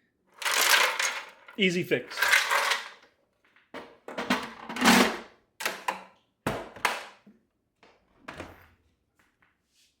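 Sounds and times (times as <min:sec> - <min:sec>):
ice cubes clattering in bin: 0:00.4 - 0:01.4, 0:02.1 - 0:03.0.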